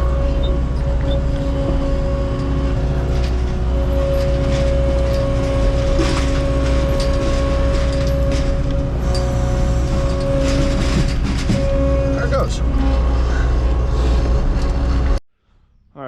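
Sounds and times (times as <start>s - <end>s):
machine knocks and rattles: 0.0s - 15.1s
loader engine running: 0.0s - 15.2s.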